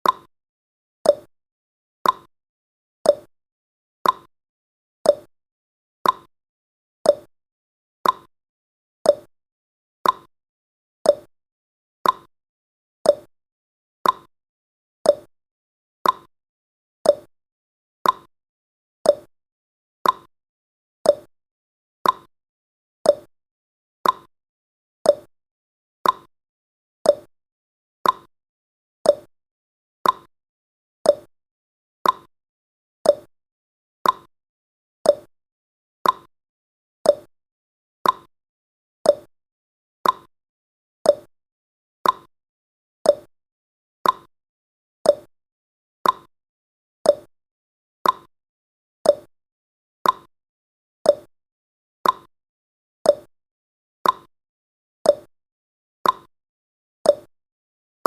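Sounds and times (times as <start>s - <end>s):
clock ticking: 40.0s - 40.3s.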